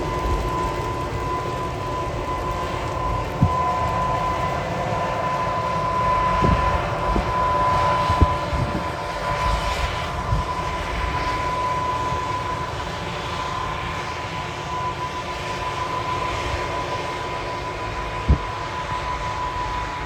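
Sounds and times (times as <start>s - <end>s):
wind buffeting microphone: 0.0s - 11.6s, 17.9s - 20.0s
high whine: 0.0s - 20.0s.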